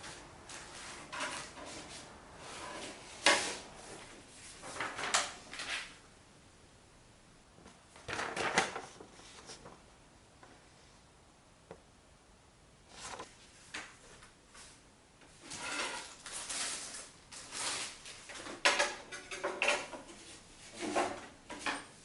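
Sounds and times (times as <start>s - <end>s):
sheet metal scrapes and clinks: 1.0s - 1.8s, 15.5s - 16.2s.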